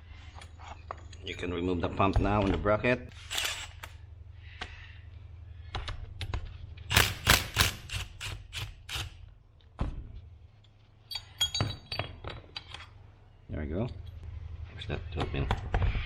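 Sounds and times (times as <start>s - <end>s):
metallic clinks: 10.6s - 12.8s.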